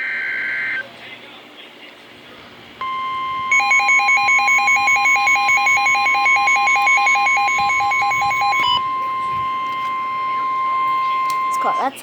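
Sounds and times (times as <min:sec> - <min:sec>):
fast beeping alarm: 0:02.8 - 0:12.0
steady warning alarm tone: 0:02.8 - 0:12.0.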